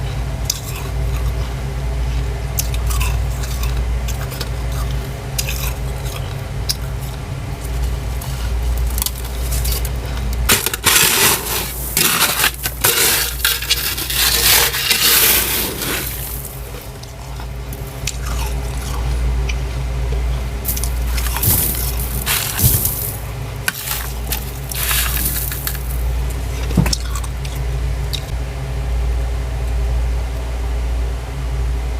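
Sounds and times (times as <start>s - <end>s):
freezer low hum: 0.0s - 31.9s
scraping frost in freezer: 3.3s - 19.2s, 20.6s - 26.8s.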